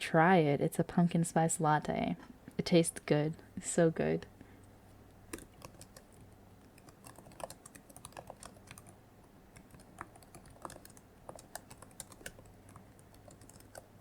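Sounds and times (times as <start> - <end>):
typing on computer keyboard: 5.3 - 14.0.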